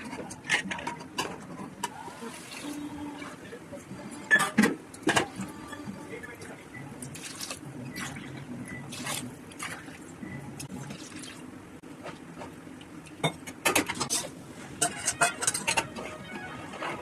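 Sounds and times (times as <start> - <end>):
spoon scraping against cookware: 13.9 - 16.2.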